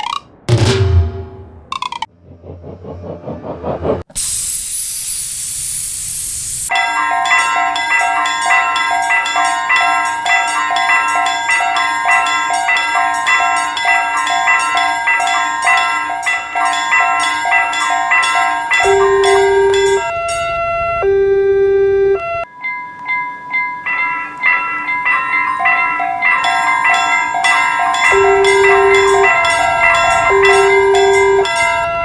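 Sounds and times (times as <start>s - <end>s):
railroad crossing alarm bell: 6.6s - 32.0s.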